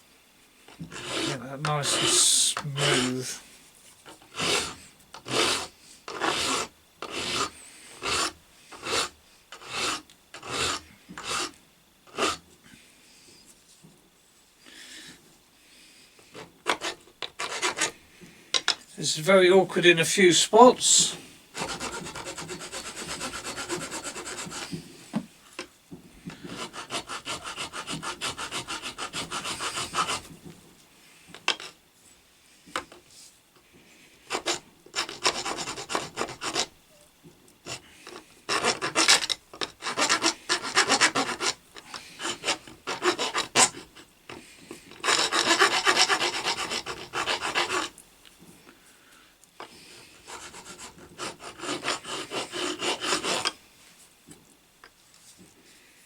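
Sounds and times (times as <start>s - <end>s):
hand file rasping on metal: 0.9s - 2.2s, 4.3s - 12.4s, 16.3s - 18.0s, 21.6s - 24.8s, 26.4s - 30.3s, 34.3s - 36.7s, 37.6s - 44.0s, 44.8s - 48.0s, 49.6s - 53.6s.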